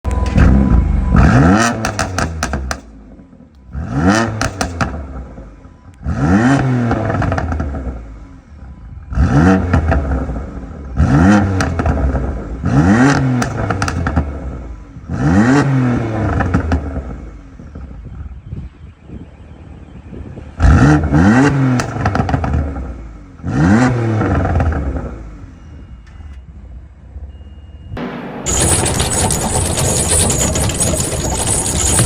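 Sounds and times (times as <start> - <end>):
exhaust pops and crackles: 0.0 - 2.9, 4.4 - 5.0, 11.4 - 14.7, 28.4 - 32.0
car engine revving: 0.1 - 2.9, 3.7 - 5.4, 9.1 - 17.4, 20.6 - 25.5, 28.0 - 32.0.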